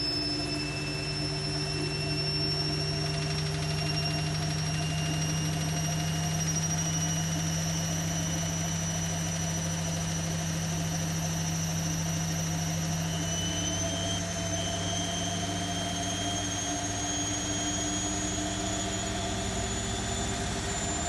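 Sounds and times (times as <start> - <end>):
washing machine spinning: 0.0 - 6.8.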